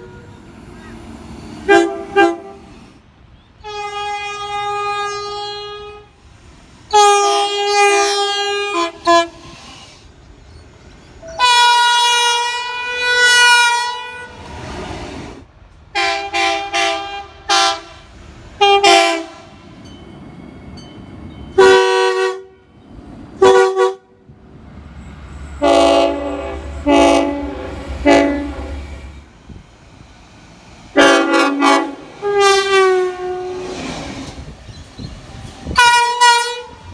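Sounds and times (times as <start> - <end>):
locomotive air horn blasts: 0.0 - 0.4, 1.6 - 2.8, 3.6 - 6.2, 6.9 - 9.6, 11.2 - 14.5, 15.9 - 19.7, 21.6 - 22.8, 23.4 - 24.3, 25.6 - 29.1, 30.9 - 33.9, 35.6 - 36.9.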